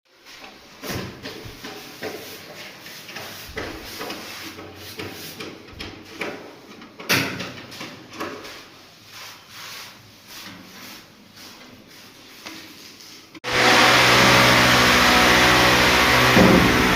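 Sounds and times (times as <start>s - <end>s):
knocks clunks and scraping clatters: 0.4s - 8.6s, 13.8s - 16.9s.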